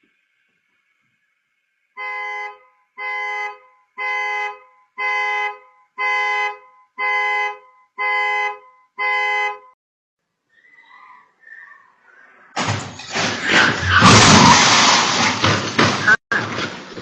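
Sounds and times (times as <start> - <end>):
car horn honking: 2.0 - 9.8.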